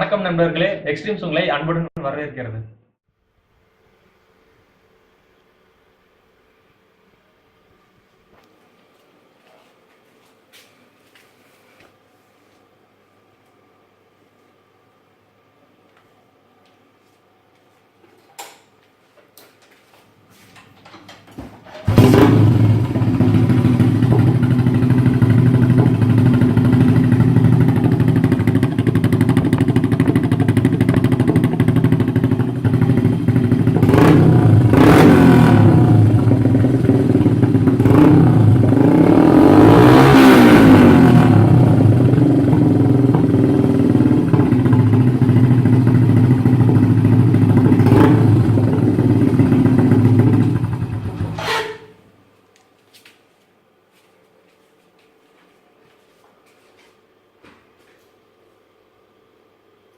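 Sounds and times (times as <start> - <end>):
vehicle engine running: 21.9 - 51.4.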